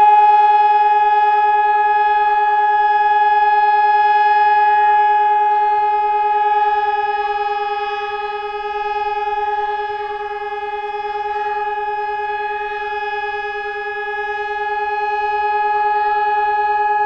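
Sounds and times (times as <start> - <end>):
buzzy electronic alarm tone: 4.2 - 17.0.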